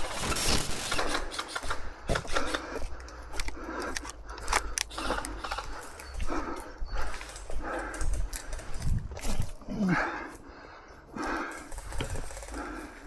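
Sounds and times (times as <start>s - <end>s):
low wind rumble: 5.4s - 9.6s.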